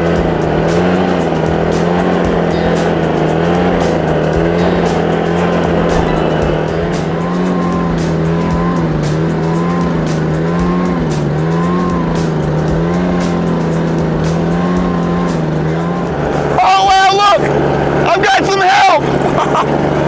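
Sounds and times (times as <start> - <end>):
background music with quick beat: 0.0 - 19.0
leaf blower engine running: 0.0 - 20.0.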